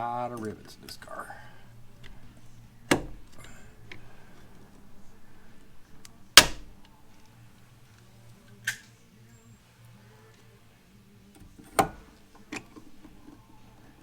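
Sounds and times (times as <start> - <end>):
rivet mandrel snapping: 0.8 - 7.4, 8.5 - 9.0, 11.4 - 13.8.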